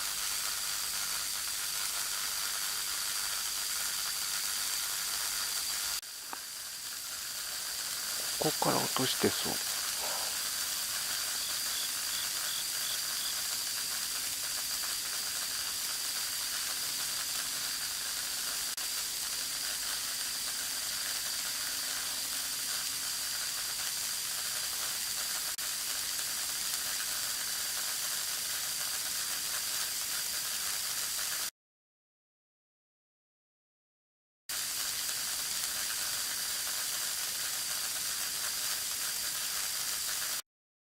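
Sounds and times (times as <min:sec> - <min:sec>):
power lines buzzing hiss: 0:00.0 - 0:29.8
thin high tone: 0:11.1 - 0:13.3.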